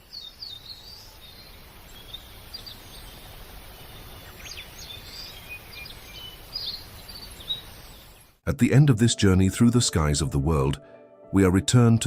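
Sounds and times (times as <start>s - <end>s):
outdoor background noise: 0.0s - 8.4s
small birds chirping: 0.0s - 8.4s.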